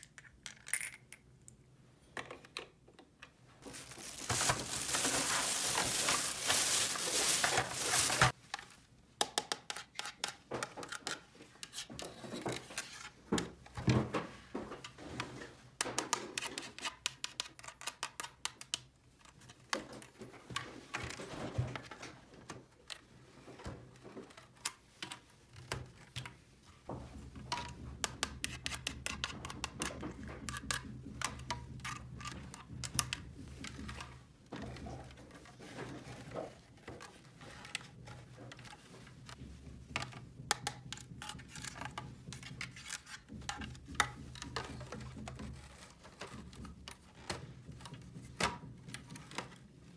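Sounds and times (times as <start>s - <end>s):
toy pieces rustling: 3.6s - 8.4s.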